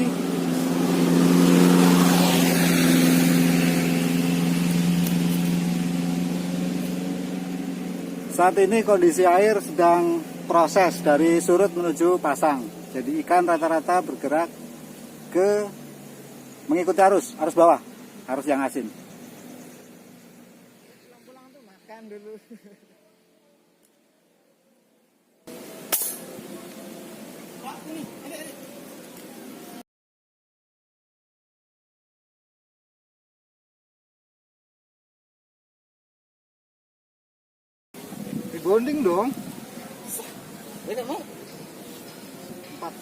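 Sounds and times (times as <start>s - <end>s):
vehicle engine running: 0.0s - 22.5s, 25.5s - 29.8s, 38.0s - 43.0s
faint steady hiss: 4.8s - 29.8s.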